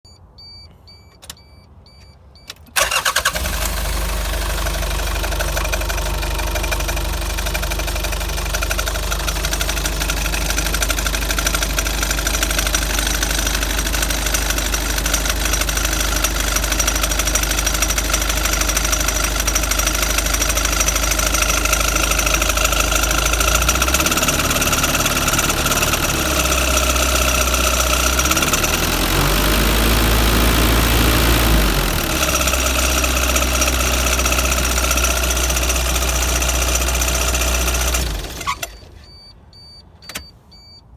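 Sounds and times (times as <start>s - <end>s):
short beeps: 0.1s - 2.6s, 39.0s - 40.9s
van engine starting and idling: 1.2s - 40.8s
click: 40.0s - 40.3s.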